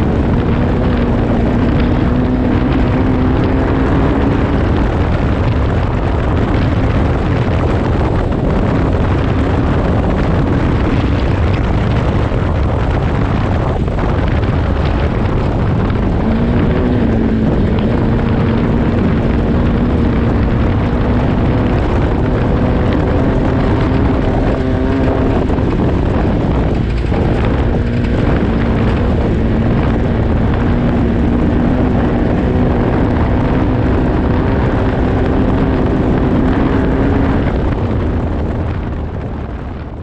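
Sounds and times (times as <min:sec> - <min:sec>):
race car engine running: 0:00.0 - 0:40.0
road and wind noise: 0:00.0 - 0:40.0.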